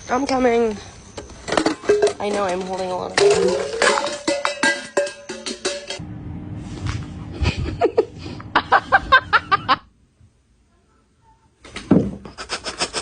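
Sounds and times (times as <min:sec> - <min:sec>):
person laughing: 0:07.3 - 0:09.9, 0:12.2 - 0:13.0.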